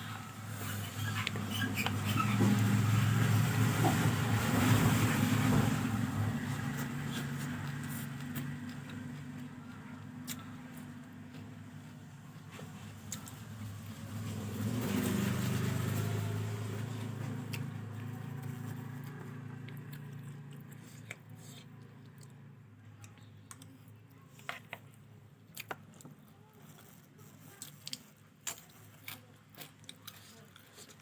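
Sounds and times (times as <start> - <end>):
eating and chewing: 0.0 - 31.0.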